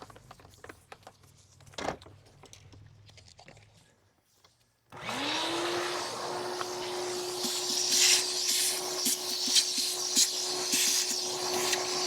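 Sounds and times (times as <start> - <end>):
electric blower motor whine: 5.0 - 12.0.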